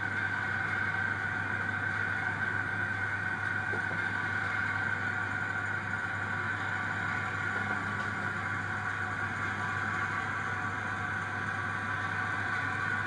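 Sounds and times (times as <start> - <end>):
model train locomotive humming: 0.0 - 13.0.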